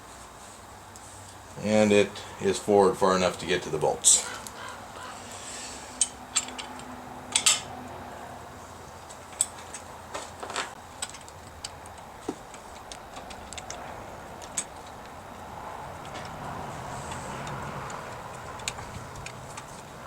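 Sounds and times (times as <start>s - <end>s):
metallic clicks of hand tools: 6.0s - 7.7s.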